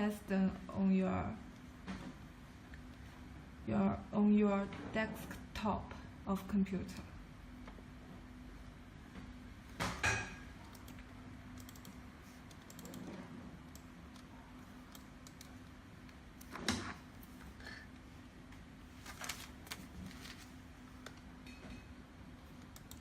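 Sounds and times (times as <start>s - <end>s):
faint steady hum: 0.0s - 23.0s
keyboard and mouse clicking: 10.7s - 16.9s, 22.6s - 23.0s.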